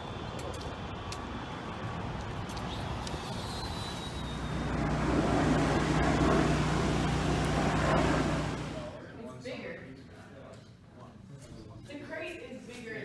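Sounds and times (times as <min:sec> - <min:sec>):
vehicle noise: 0:00.2 - 0:09.0
low hum: 0:02.8 - 0:09.0.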